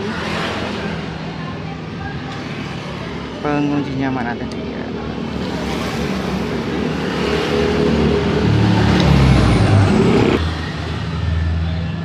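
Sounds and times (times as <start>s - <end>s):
vehicle engine rising in pitch: 6.9s - 12.0s.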